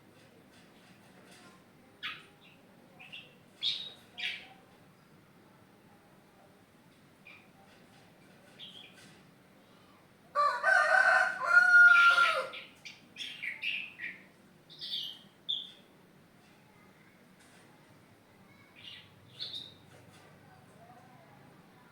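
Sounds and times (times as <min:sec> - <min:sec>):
rooster crowing: 0:10.4 - 0:12.5.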